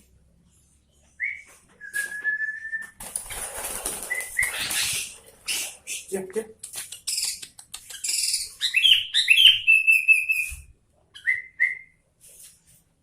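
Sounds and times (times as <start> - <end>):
whistle: 1.2 - 3.0, 11.2 - 12.0
rustling flapping noise: 1.5 - 5.8.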